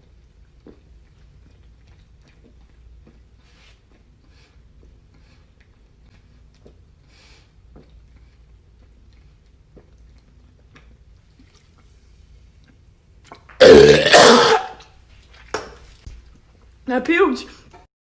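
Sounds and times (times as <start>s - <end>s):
person gulping soda: 12.6s - 15.6s
woman belching: 13.6s - 14.8s.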